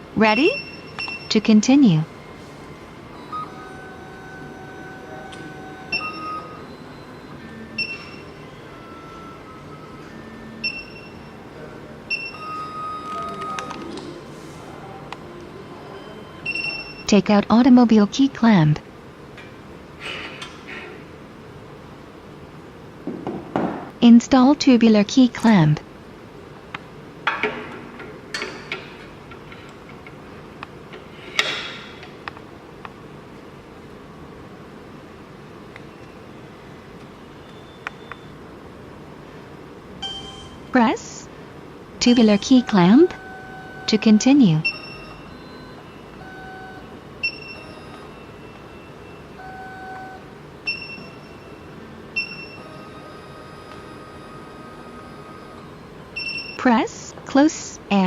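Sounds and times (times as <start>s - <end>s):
short electronic beeps: 42.0s - 51.6s, 55.8s - 56.9s.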